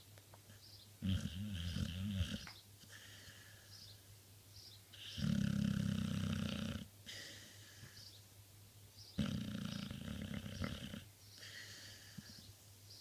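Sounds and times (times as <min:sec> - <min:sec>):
dog snoring: 0:01.0 - 0:02.5, 0:05.0 - 0:06.9, 0:09.2 - 0:11.1.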